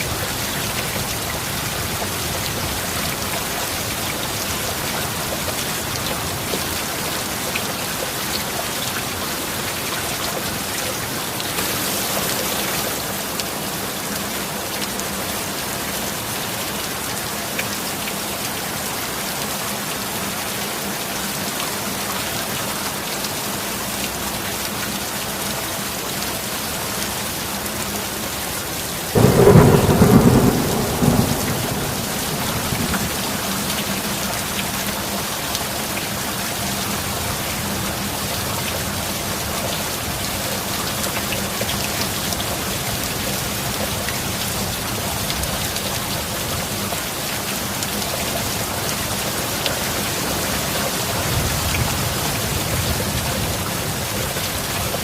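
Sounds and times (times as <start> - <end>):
heavy rain hissing: 0.0 - 21.6, 24.1 - 55.0
thunderclap rumbling: 29.2 - 34.8.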